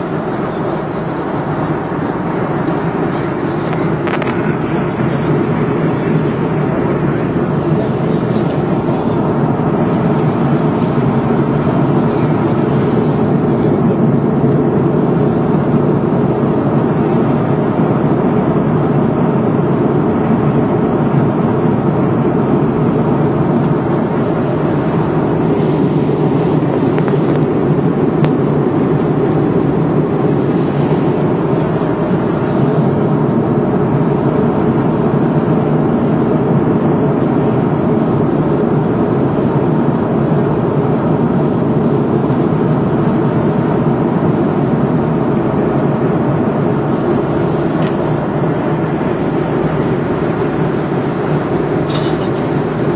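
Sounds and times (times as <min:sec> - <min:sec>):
airliner cabin engine noise: 0:00.0 - 0:52.9.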